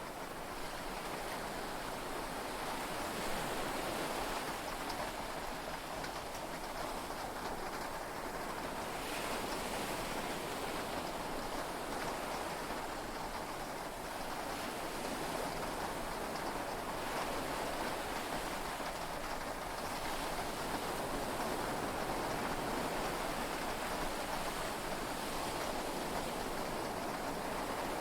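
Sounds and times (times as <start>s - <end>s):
heavy rain on a boat: 0.0s - 28.0s.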